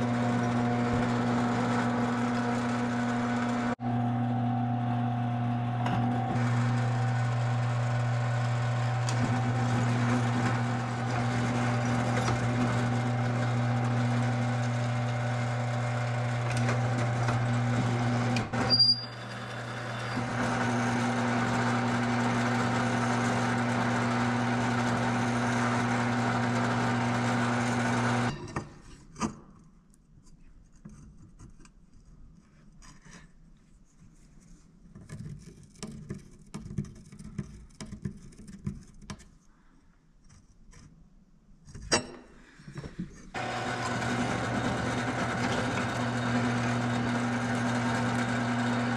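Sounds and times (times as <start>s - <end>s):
electric shop tool humming: 0.0s - 28.4s, 43.3s - 48.9s.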